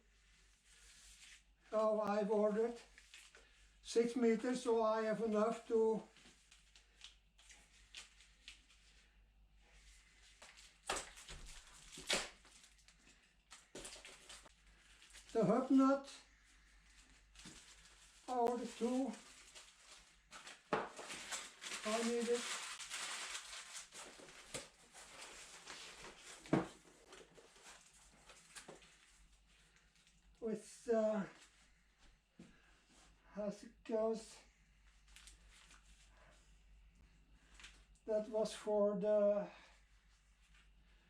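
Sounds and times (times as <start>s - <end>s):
packaging rustle: 10.4s - 15.4s, 17.0s - 30.1s.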